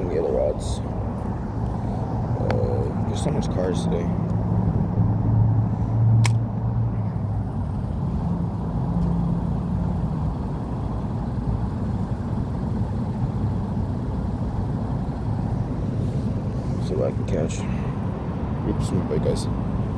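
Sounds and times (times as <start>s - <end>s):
passing cars rumble: 0.0s - 19.9s
sharp click: 6.2s - 6.5s.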